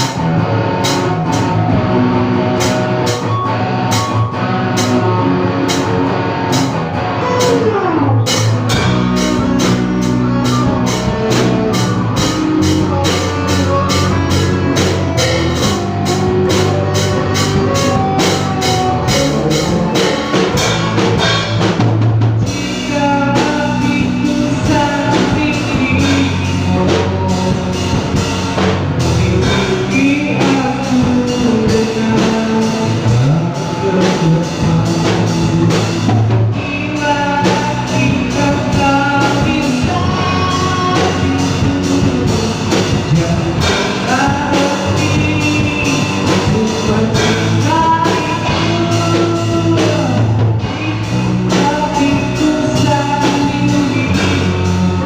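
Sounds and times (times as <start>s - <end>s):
rock song with drums and singing: 0.0s - 55.0s.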